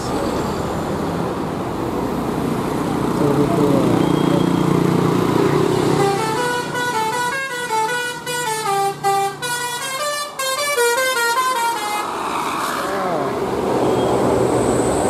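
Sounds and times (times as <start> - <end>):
bus engine running: 0.0 - 12.0
multi-tone bus horn melody: 5.8 - 12.1.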